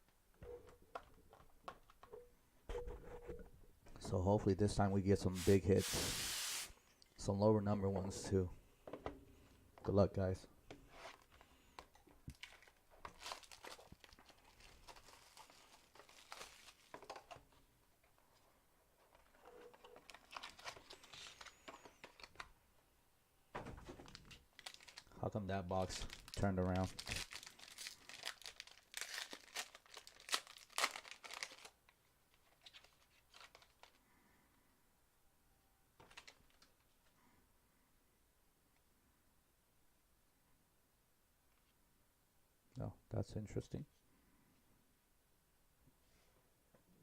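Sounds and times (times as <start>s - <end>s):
packaging crinkling and tearing: 12.3s - 17.4s, 19.7s - 22.4s, 24.1s - 25.2s, 25.8s - 34.0s.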